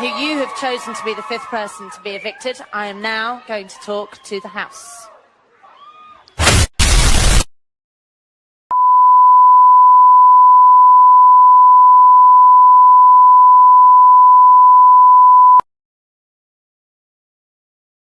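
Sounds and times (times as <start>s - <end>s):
steady test tone beep: 8.7s - 15.6s.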